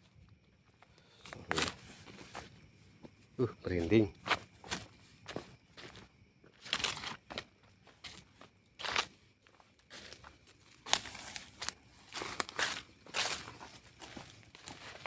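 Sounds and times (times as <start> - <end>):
rustling and crunching debris: 5.8 - 15.0.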